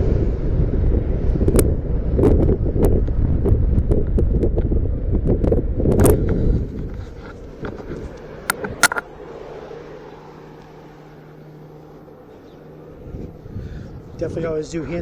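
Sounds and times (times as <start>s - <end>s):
wind buffeting microphone: 0.0s - 9.4s, 12.2s - 15.0s
street traffic: 5.5s - 14.9s
sharp clicks: 8.5s - 9.0s.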